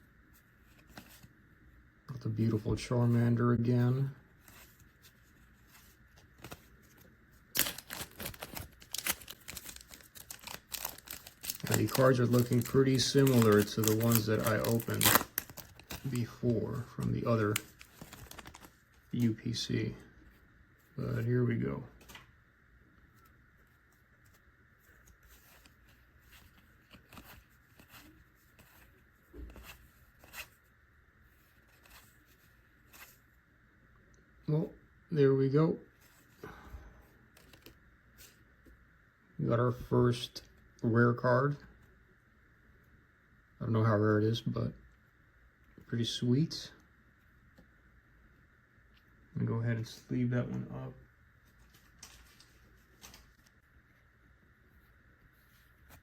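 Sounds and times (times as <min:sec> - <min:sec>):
trading cards rustling and clicking: 0:04.4 - 0:19.4, 0:23.2 - 0:30.6, 0:37.3 - 0:38.4
plastic packaging crinkling: 0:06.2 - 0:19.3.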